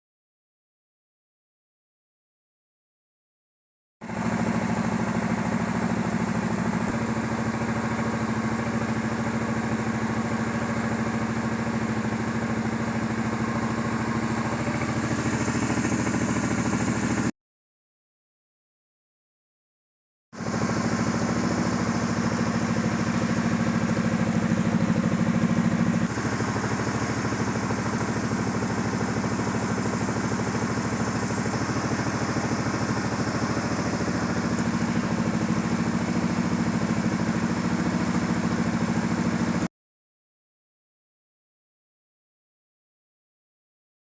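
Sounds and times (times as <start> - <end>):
quad bike engine running: 4.0 - 17.3, 20.4 - 39.7.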